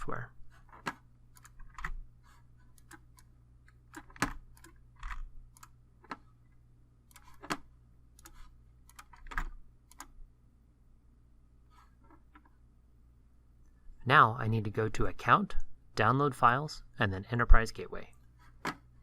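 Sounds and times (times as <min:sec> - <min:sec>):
typing on computer keyboard: 0:08.2 - 0:10.1.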